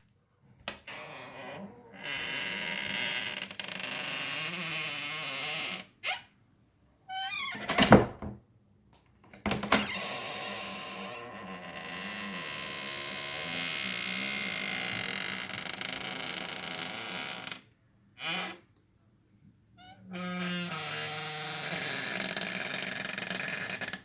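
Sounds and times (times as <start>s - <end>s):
door creaking and scraping: 0.7s - 6.3s, 7.1s - 8.4s, 9.5s - 18.7s, 20.2s - 24.0s
squeaky hinge creak: 0.9s - 6.3s, 7.1s - 8.0s, 9.7s - 17.6s, 18.2s - 18.6s, 20.2s - 24.0s.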